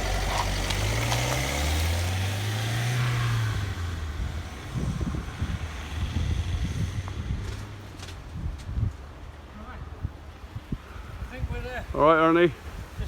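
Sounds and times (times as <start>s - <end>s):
lorry diesel engine pulling away: 0.0s - 7.1s.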